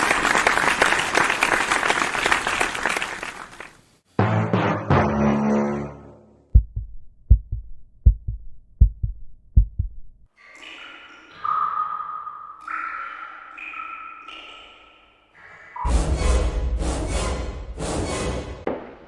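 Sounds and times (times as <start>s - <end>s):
heartbeat thumps: 6.5s - 10.3s.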